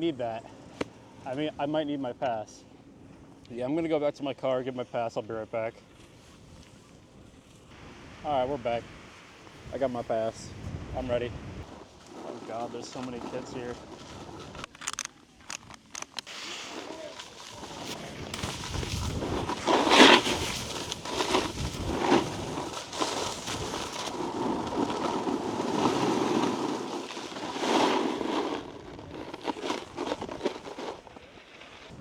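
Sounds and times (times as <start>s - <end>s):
snowboard scraping over icy snow: 7.8s - 14.7s, 16.3s - 32.0s
sharp clicks: 14.6s - 16.3s.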